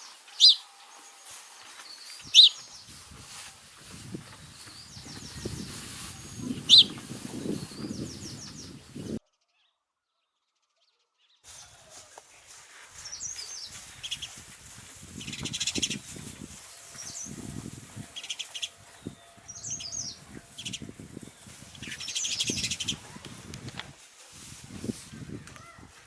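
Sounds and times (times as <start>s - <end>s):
sparrows chirping: 0.0s - 9.7s, 12.4s - 23.2s.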